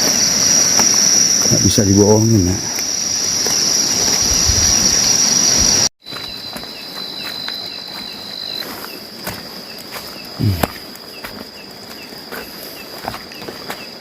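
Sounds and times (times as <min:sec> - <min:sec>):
insects trilling: 0:00.0 - 0:14.0
lower insect tone: 0:00.0 - 0:14.0.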